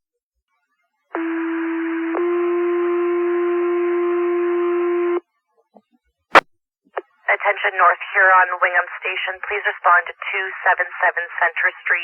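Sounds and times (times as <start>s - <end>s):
radio hiss: 7.3s - 12.0s.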